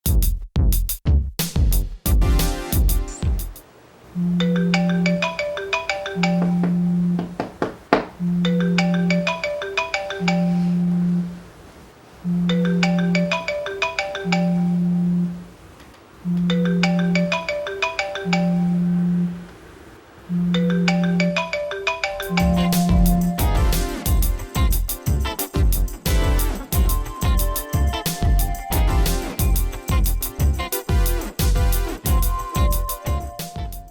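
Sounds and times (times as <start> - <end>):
marimba ringtone melody: 4.4 - 7.2, 8.2 - 11.0, 12.5 - 15.0, 16.4 - 19.1, 20.4 - 24.9, 26.7 - 30.8, 32.0 - 33.9.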